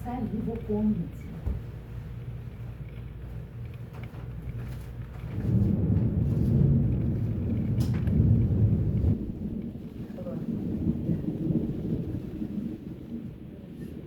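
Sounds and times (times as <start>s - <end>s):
thunder rumbling: 0.0s - 14.0s.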